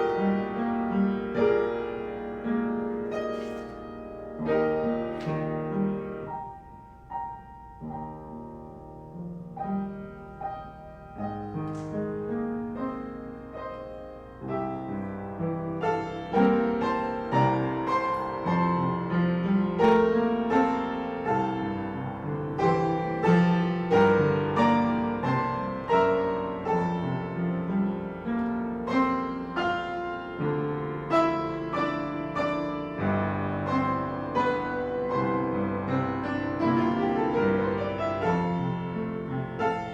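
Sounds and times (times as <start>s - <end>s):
slow chordal piano piece: 0.0s - 39.9s.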